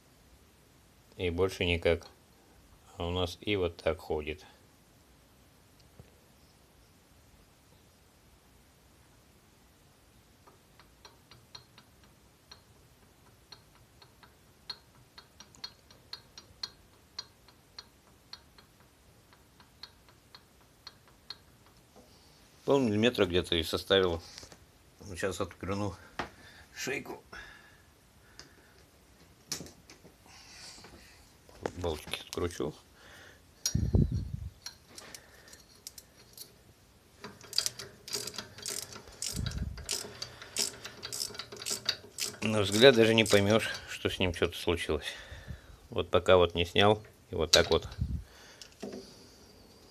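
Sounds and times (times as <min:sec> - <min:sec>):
faint metallic clicks: 0:10.4 - 0:22.1.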